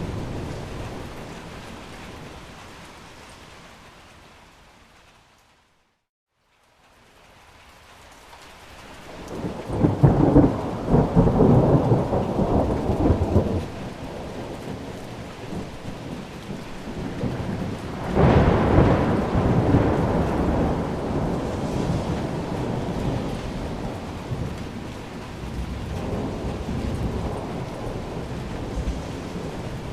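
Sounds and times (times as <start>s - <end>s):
heavy rain: 0.0s - 29.9s
thunder rumbling: 9.2s - 29.9s.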